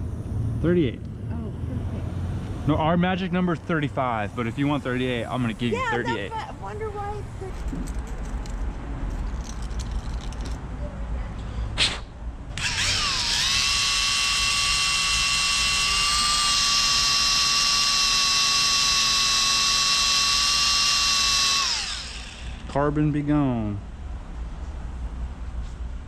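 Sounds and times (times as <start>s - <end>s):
power drill whining: 12.6s - 22.8s.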